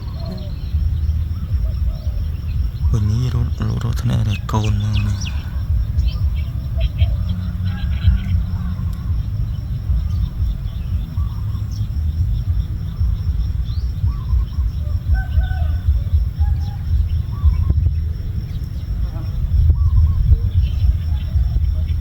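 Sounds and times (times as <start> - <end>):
bird chirps: 0.0 - 22.0
low rumble: 0.0 - 22.0.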